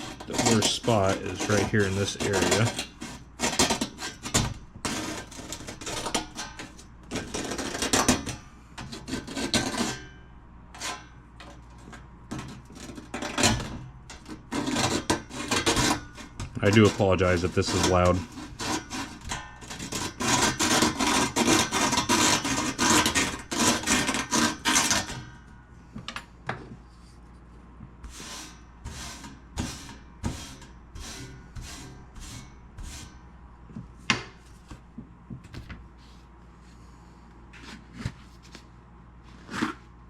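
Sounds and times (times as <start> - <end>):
razor blade scraping rust off metal: 0.0 - 11.6, 12.3 - 25.4, 28.2 - 33.3.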